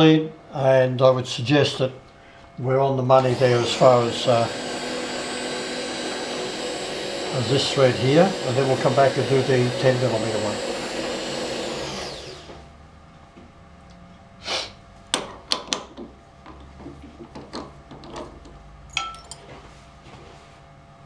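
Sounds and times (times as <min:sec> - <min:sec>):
whirring machine winding down: 0:03.0 - 0:13.2
metallic clinks of hand tools: 0:18.9 - 0:19.5.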